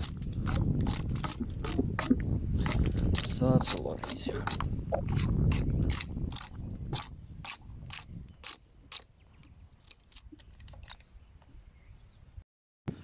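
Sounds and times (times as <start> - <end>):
chisel scraping bark off log: 0.0 - 9.1.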